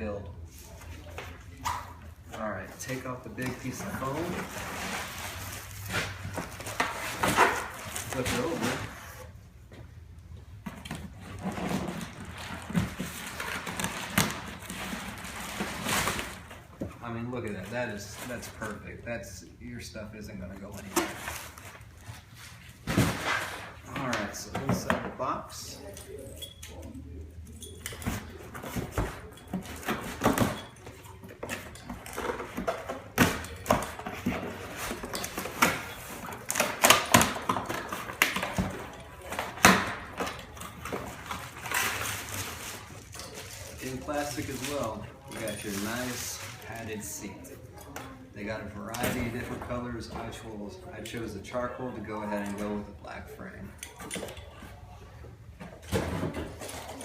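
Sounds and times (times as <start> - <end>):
plastic and foam rustling in box: 2.7 - 9.2, 40.8 - 47.2.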